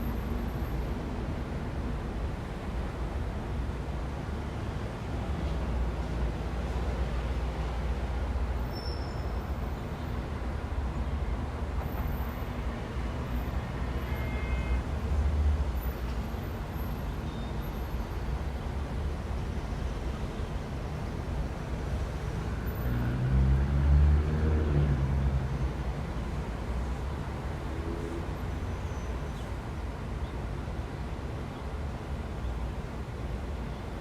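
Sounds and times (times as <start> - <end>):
rumble of passing vehicles: 0.0 - 34.0
loud engine of approaching vehicle: 21.8 - 29.0.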